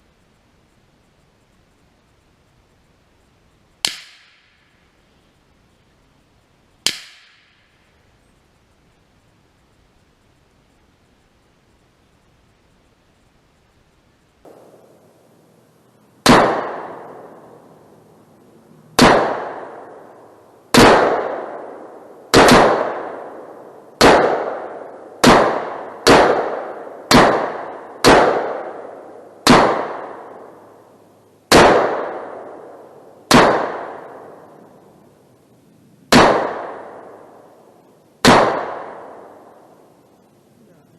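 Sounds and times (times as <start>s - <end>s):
rifle shots echoing: 14.5s - 15.4s, 16.2s - 35.1s, 36.1s - 40.0s.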